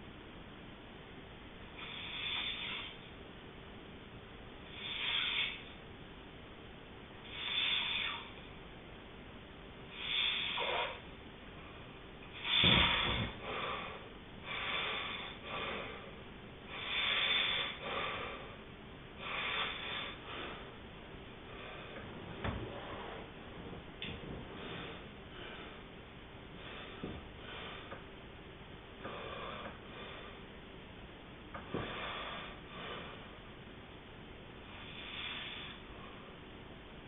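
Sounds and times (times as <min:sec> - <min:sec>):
deep snort: 0:01.8 - 0:03.0, 0:04.7 - 0:05.7, 0:07.3 - 0:08.3, 0:10.0 - 0:11.0, 0:12.3 - 0:16.1, 0:16.7 - 0:18.5, 0:19.2 - 0:20.7.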